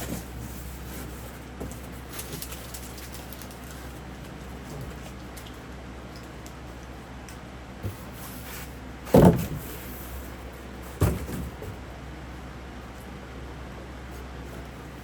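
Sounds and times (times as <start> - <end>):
steady low hum: 0.0 - 15.0
box thumps and knocks: 9.1 - 9.7, 11.0 - 11.8.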